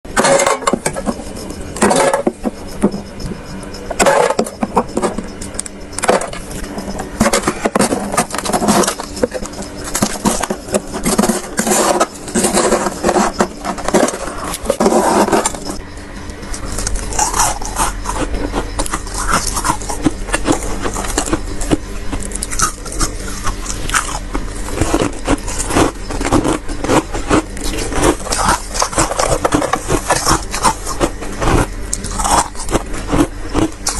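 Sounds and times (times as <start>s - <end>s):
low steady hum: 0.1s - 33.9s
freezer frost being scraped: 7.2s - 15.8s, 16.6s - 33.9s.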